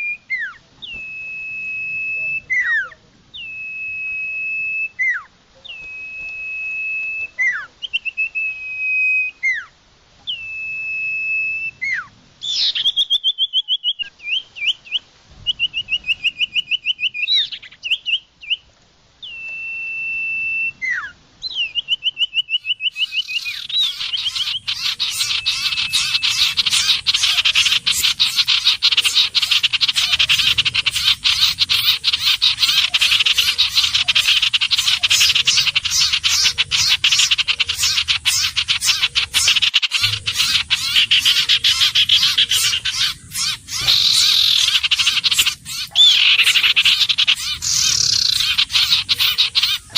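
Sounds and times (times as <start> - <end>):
bird song whistled notes: 0.0 - 18.6, 19.2 - 49.9
birds chattering chorus: 21.5 - 49.9.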